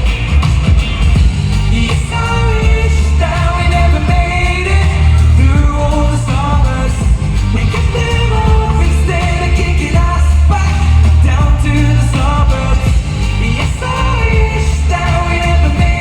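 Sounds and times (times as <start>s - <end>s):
heavy bass beat: 0.0s - 16.0s
person singing: 1.4s - 16.0s.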